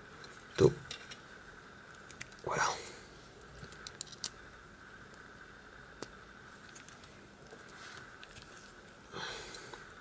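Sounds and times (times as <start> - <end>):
faint steady whine: 0.0 - 10.0
small metal parts clicking: 3.6 - 4.4.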